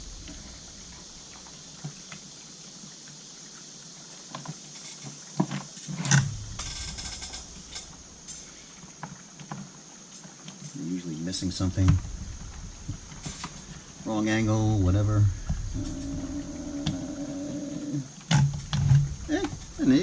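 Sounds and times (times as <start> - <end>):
brief rattle: 5.8 - 8.6, 11.8 - 14.0.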